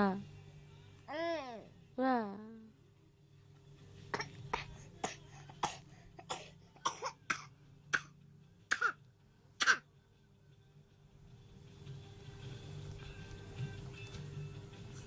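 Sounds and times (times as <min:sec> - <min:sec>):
small child coughing: 0:04.1 - 0:09.0, 0:09.6 - 0:09.9.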